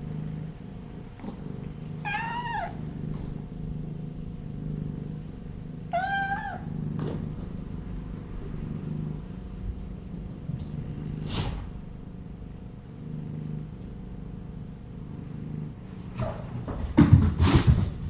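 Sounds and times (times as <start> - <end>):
steady low hum: 0.0 - 18.0
kitten meowing: 2.0 - 2.8, 5.9 - 6.7.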